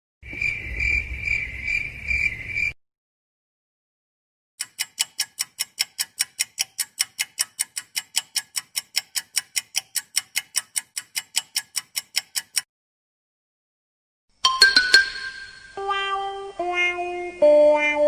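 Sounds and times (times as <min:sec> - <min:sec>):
clock ticking fast: 0:04.6 - 0:12.7.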